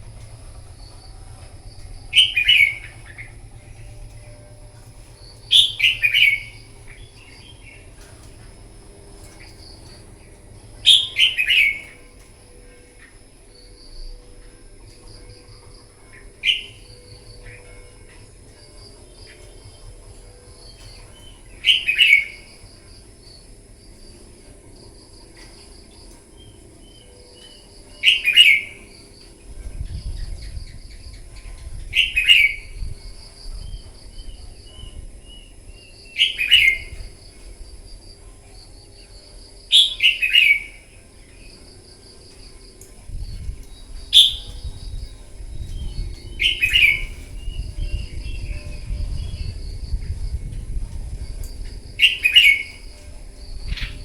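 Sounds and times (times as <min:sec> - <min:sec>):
low rumble: 0:00.0 - 0:27.6, 0:28.8 - 0:39.6, 0:40.9 - 0:54.0
bird singing: 0:00.0 - 0:54.0
insects trilling: 0:00.0 - 0:54.0.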